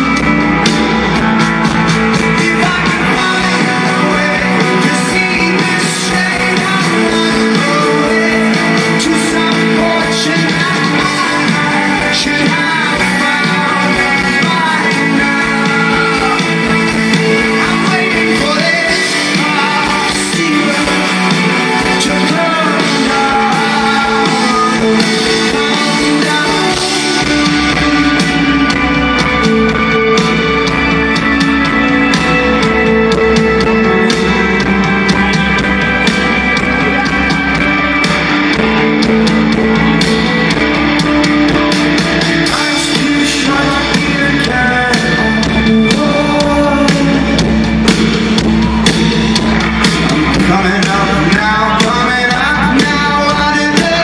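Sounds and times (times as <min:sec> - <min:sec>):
lead singer singing: 0:00.0 - 0:54.0
live rock band playing: 0:00.0 - 0:54.0.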